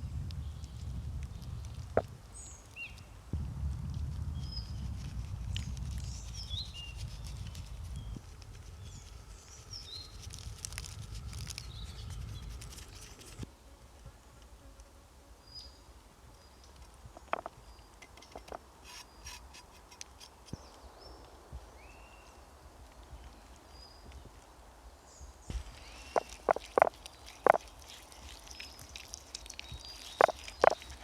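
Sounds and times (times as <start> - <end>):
small clicks and patter: 0.0 - 13.5, 16.6 - 21.7, 22.8 - 24.5, 25.5 - 31.0
low rumble: 3.2 - 13.4
birds chirping: 25.2 - 31.0.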